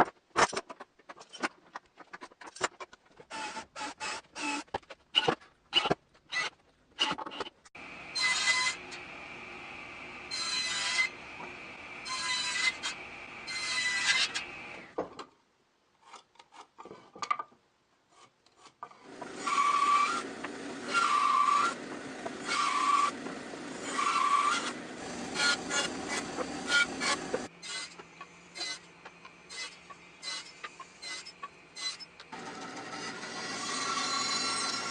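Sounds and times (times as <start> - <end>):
hand saw cutting wood: 19.0 - 23.2, 23.8 - 28.8.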